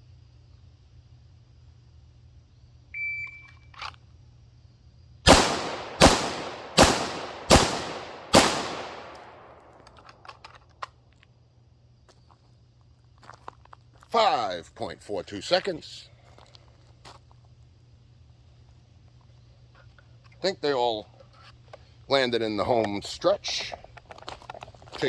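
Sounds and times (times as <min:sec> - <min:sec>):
pistol shots with ringing echo: 0:05.2 - 0:10.0.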